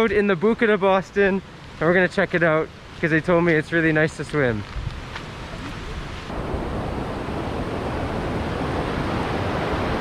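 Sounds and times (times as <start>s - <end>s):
waterfall rushing: 5.4s - 10.0s.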